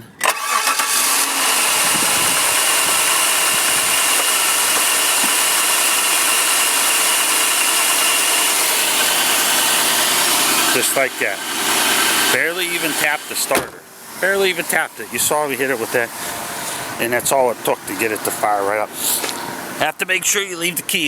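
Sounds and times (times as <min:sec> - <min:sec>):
starter cranking: 0:00.0 - 0:13.6
car engine idling: 0:00.0 - 0:21.0.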